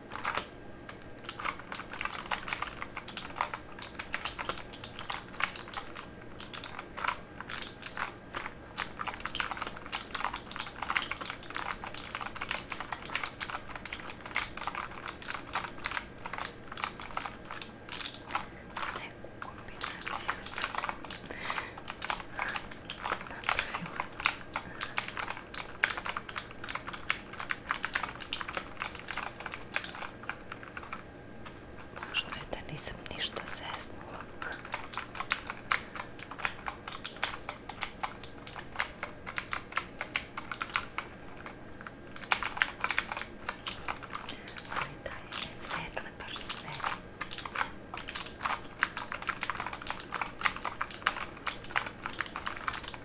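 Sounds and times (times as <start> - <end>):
mechanical keyboard key clicks: 1.2 - 19.0, 19.8 - 30.1, 42.2 - 45.8, 46.4 - 53.0.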